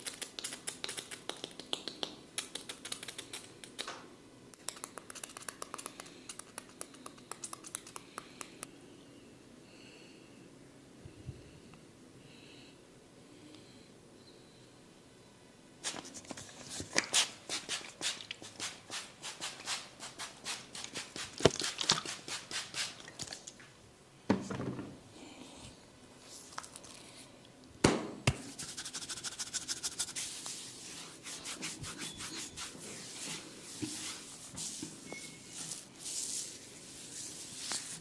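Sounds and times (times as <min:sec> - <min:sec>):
hands rubbing skin and hair: 0:00.0 - 0:03.9, 0:04.6 - 0:08.6, 0:15.8 - 0:23.1, 0:28.4 - 0:38.0.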